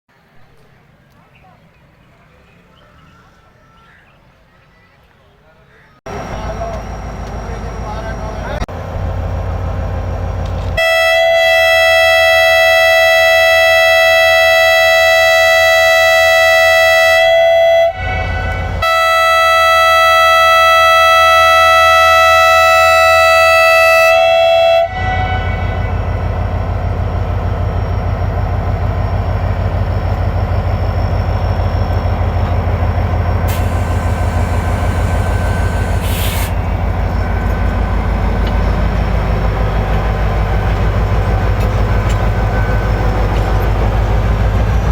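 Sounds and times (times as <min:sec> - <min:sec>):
low rumble of train: 0:00.1 - 0:44.9
locomotive horn blasts: 0:10.8 - 0:26.4, 0:33.5 - 0:36.6.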